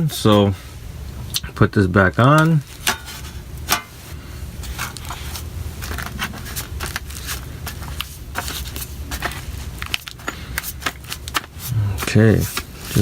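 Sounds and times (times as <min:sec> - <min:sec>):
low steady hum: 0:00.0 - 0:13.0
metal cover scraping and clicking: 0:02.4 - 0:04.0.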